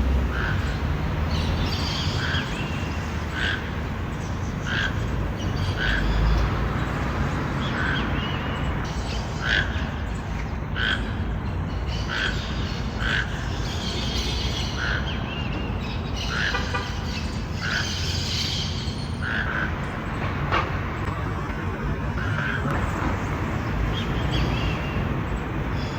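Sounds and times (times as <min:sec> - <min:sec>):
birds chattering: 0:00.0 - 0:25.9
toucan hoarse calls: 0:00.2 - 0:06.4.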